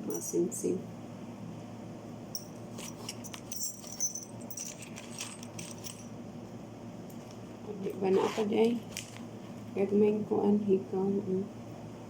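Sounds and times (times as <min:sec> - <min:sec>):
jewellery clinking: 0:02.3 - 0:06.2.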